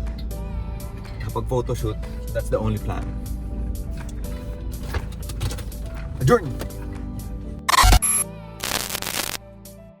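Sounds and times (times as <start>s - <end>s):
outro music: 6.7s - 9.5s.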